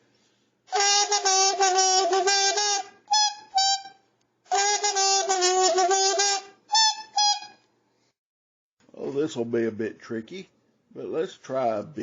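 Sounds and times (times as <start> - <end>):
buzzy kazoo-like instrument notes: 0.7 - 7.7.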